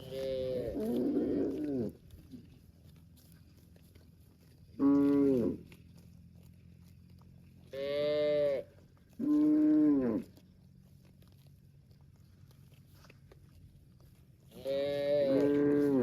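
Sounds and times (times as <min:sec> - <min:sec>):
cow mooing: 0:00.0 - 0:02.0, 0:04.8 - 0:05.7, 0:07.7 - 0:10.3, 0:14.6 - 0:16.0.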